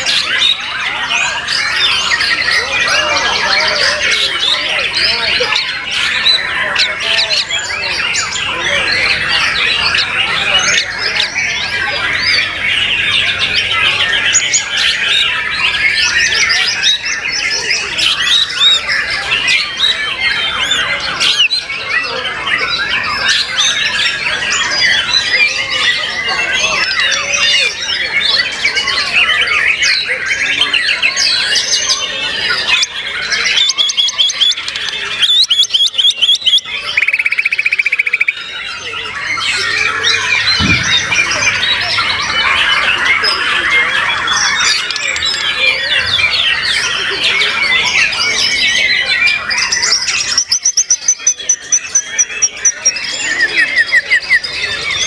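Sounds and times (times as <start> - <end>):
birds singing: 0.0 - 55.0
fast bird trill: 29.2 - 47.0, 47.6 - 55.0.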